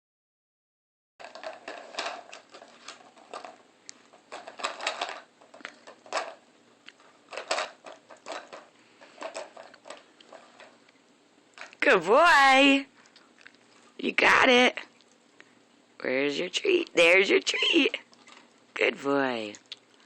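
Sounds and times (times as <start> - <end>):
puzzle toy clattering: 1.2 - 6.4, 7.0 - 10.8.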